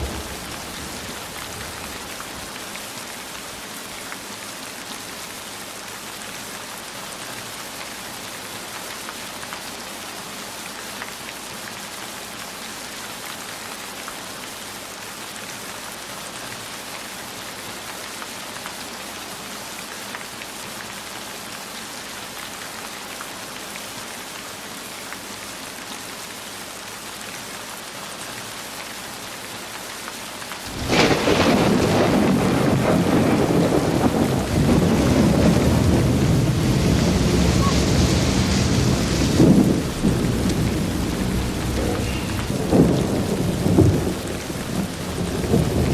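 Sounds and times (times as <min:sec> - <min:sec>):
thunderclap rumbling: 0:00.0 - 0:02.6, 0:30.7 - 0:45.9
heavy rain: 0:00.0 - 0:45.9.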